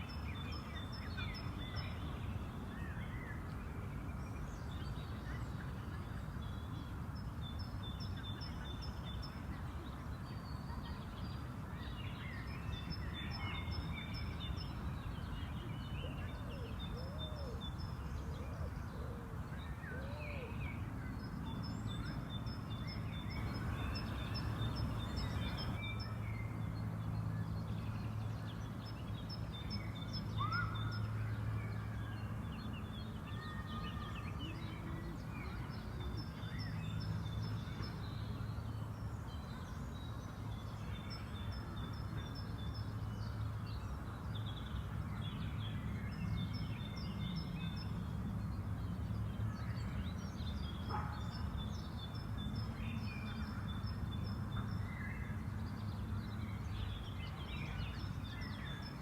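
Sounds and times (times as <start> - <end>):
songbirds singing: 0.0 - 59.0
low background rumble: 23.3 - 25.8.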